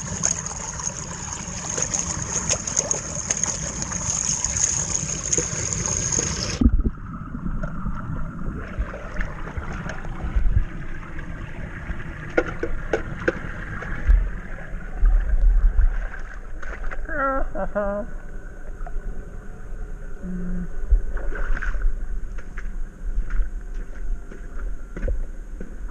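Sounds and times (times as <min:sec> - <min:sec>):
water rushing through roof drain: 0:00.0 - 0:06.7.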